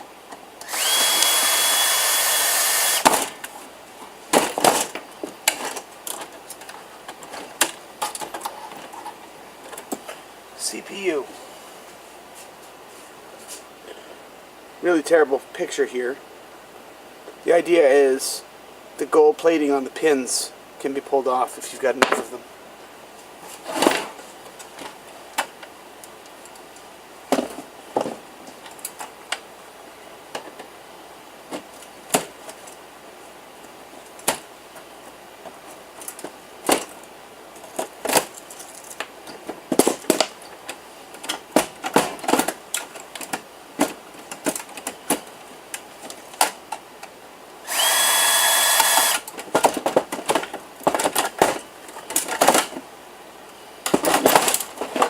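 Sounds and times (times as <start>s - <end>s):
power drill running: 0.6s - 3.1s, 47.6s - 49.3s.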